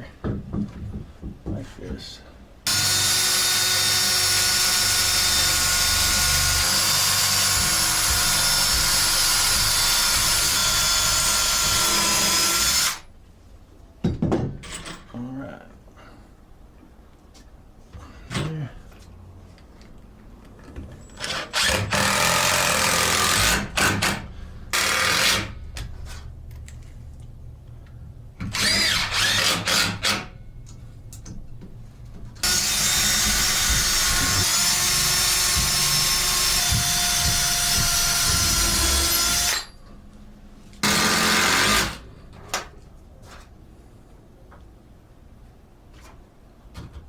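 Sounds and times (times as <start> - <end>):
power drill driving screws into wood: 2.7 - 13.0, 21.2 - 25.6, 28.5 - 30.3, 32.4 - 39.7, 40.8 - 42.0.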